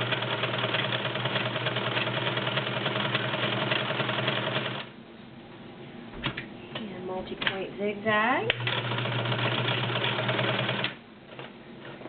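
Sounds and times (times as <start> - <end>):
sewing machine running: 0.0 - 4.9, 8.5 - 11.0.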